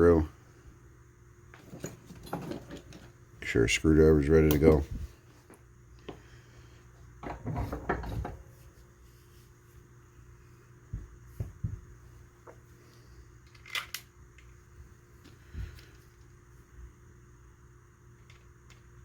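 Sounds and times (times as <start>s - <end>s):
metal parts scraping on workbench: 1.6s - 3.1s.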